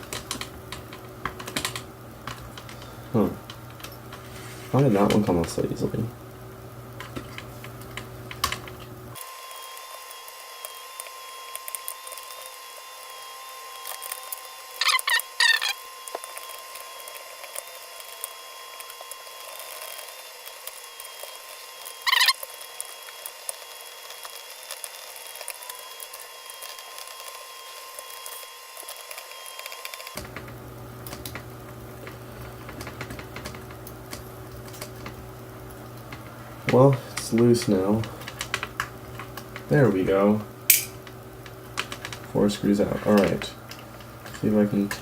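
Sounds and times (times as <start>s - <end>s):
screwdriver ticks and scrapes: 13.8s - 30.2s.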